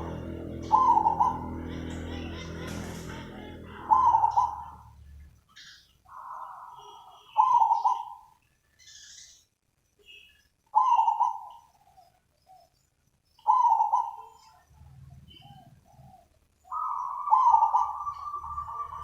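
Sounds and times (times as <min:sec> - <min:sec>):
dove cooing: 0:00.0 - 0:04.9, 0:06.1 - 0:08.3, 0:10.8 - 0:12.6, 0:13.4 - 0:14.6, 0:15.3 - 0:19.0
faint small bird chirps: 0:05.5 - 0:19.0.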